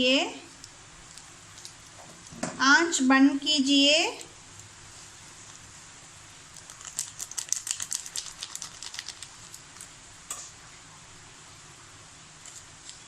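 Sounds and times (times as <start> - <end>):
hot oil crackling and clicking: 0.5 - 2.5, 6.5 - 10.6.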